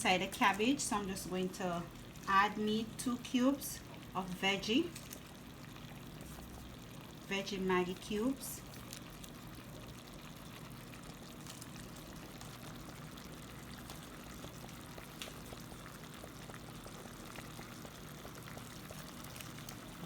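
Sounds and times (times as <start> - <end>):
pot simmering with bubbling hiss: 0.0 - 20.0
small pops: 13.8 - 15.7.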